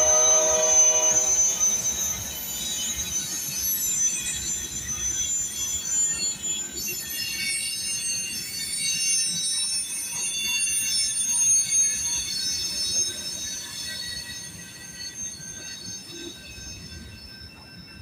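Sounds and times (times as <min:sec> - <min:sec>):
rumble of rolling train cars: 0:00.0 - 0:18.0
train wheels squealing: 0:00.0 - 0:18.0.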